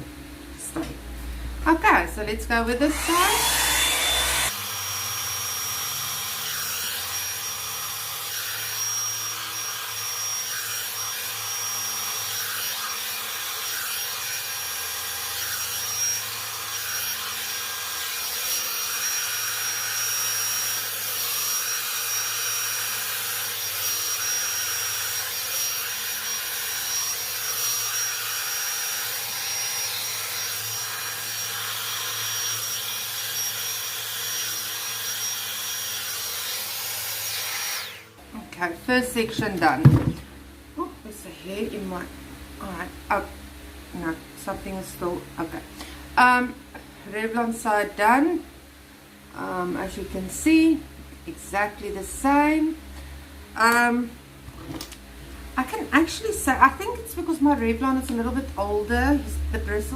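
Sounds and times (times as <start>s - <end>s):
hot-air brush blowing: 2.8s - 38.2s.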